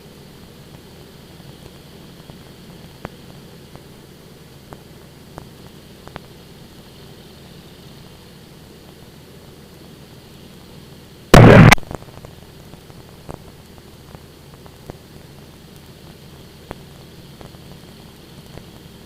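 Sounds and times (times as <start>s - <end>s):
cockpit noise hiss: 0.0s - 19.0s
loud burst of static: 11.3s - 12.1s.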